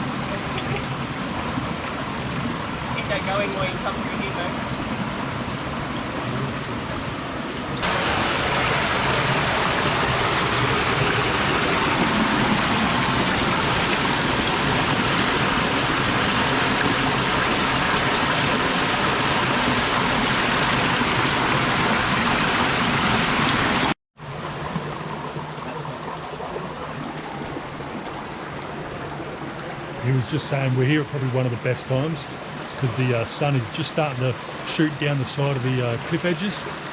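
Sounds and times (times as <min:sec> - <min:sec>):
flowing stream: 0:00.0 - 0:36.9.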